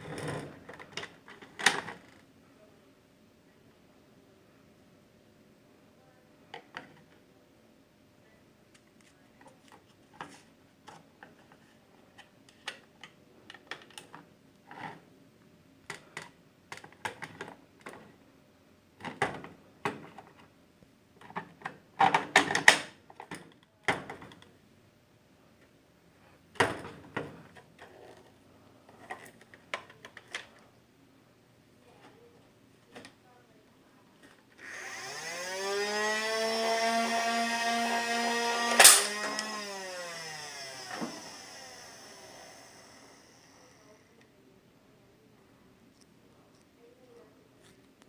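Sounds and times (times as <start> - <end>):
toy blaster plastic clicks: 38.7 - 40.2.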